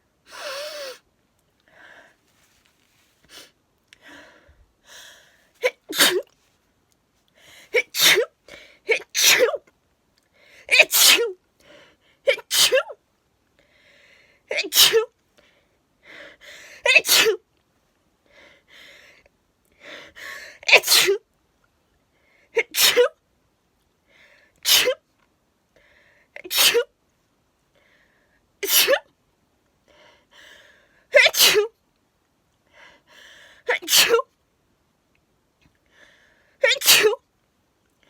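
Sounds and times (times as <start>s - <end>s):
woman sneezing: 5.6s - 6.3s, 7.8s - 8.3s, 8.9s - 9.6s, 10.7s - 11.4s, 12.3s - 13.0s, 14.5s - 15.1s, 16.9s - 17.4s, 20.7s - 21.2s, 22.6s - 23.2s, 24.7s - 25.0s, 26.5s - 26.9s, 28.6s - 29.1s, 31.2s - 31.7s, 33.7s - 34.3s, 36.6s - 37.2s.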